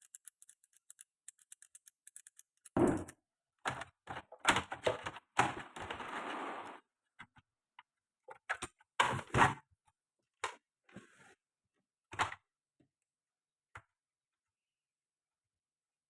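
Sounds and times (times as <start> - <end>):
tools clicking and knocking: 0.0 - 5.2
thuds: 2.8 - 3.1.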